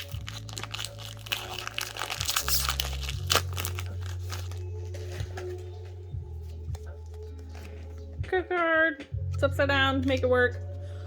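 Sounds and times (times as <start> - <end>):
sharp crack of foil: 0.0 - 4.6
foil wrapper crinkling: 0.0 - 5.7.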